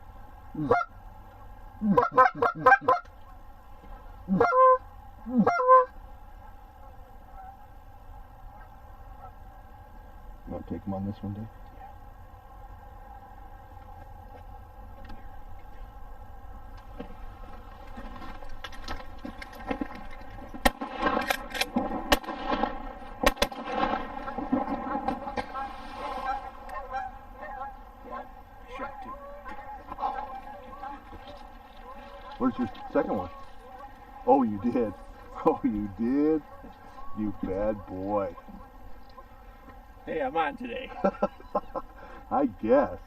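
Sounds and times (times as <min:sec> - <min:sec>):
geese honking: 0:00.5 - 0:42.4
shotgun shots: 0:20.6 - 0:25.6.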